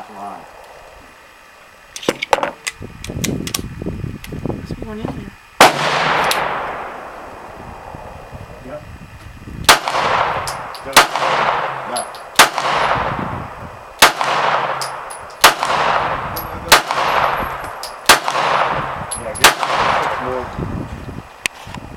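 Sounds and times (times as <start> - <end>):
pistol shots with echo: 5.6 - 7.5, 9.7 - 13.3, 14.0 - 20.5.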